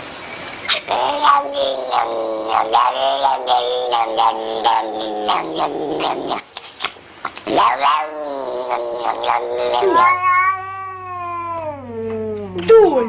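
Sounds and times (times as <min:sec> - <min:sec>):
cat yowling: 0:00.7 - 0:12.3.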